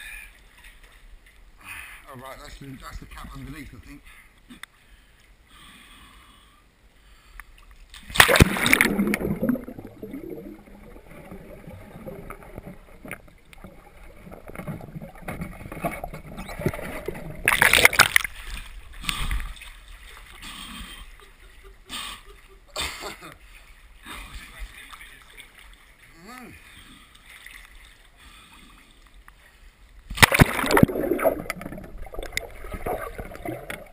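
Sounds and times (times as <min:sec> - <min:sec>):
water sloshing: 0:07.7 - 0:22.7, 0:30.1 - 0:33.9
loud water splashes: 0:08.1 - 0:13.1, 0:13.8 - 0:18.5, 0:30.1 - 0:33.9.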